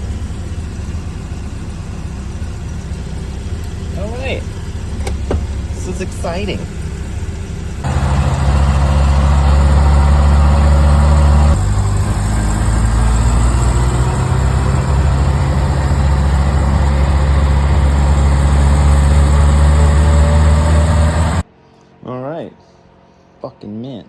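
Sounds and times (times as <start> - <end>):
car engine idling: 0.0 - 21.4.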